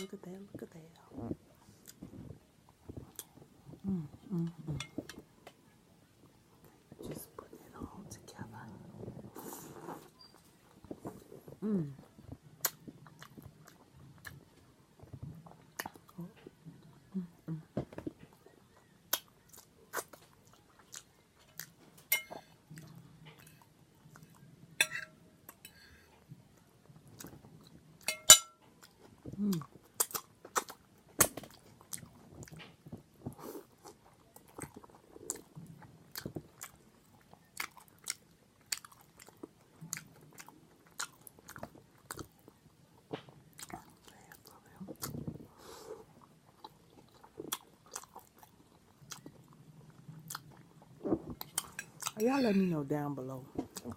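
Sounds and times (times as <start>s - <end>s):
chewing and lip-smacking: 12.0s - 17.0s, 18.2s - 22.1s, 28.8s - 45.4s, 46.0s - 52.2s.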